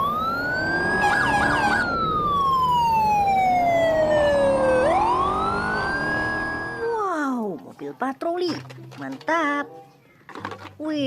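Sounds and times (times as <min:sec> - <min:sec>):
police siren wailing: 0:00.0 - 0:07.0.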